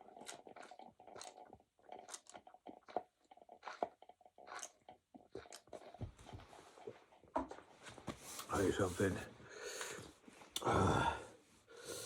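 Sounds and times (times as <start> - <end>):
person chewing food: 0.0 - 7.6.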